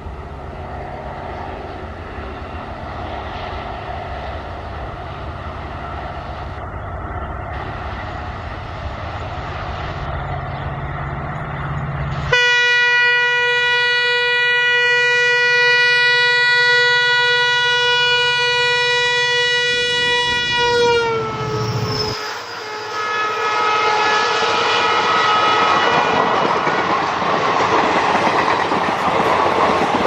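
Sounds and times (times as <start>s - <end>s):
diesel locomotive engine humming: 0.0s - 30.0s
train horn blast: 12.1s - 26.1s.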